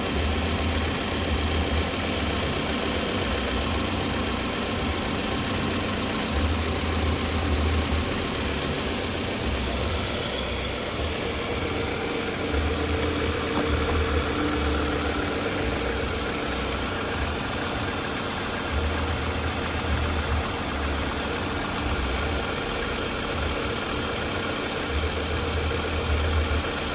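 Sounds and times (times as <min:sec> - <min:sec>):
car engine idling unevenly: 0:00.0 - 0:26.9.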